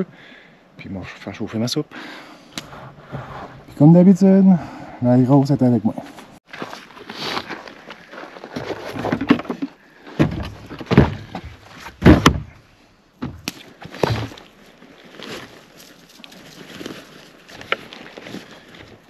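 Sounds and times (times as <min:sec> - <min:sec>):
firewood breaking and thunking: 0:08.5 - 0:12.6, 0:13.2 - 0:14.5.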